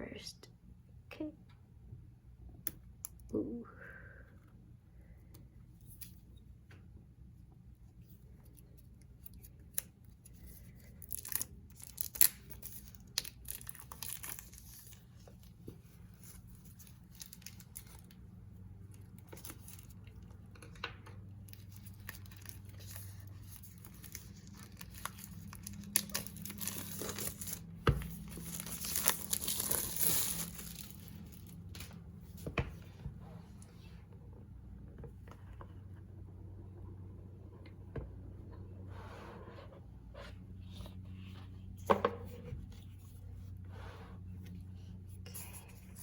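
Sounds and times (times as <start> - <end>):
packaging tearing and crinkling: 10.7 - 15.1, 21.5 - 31.9.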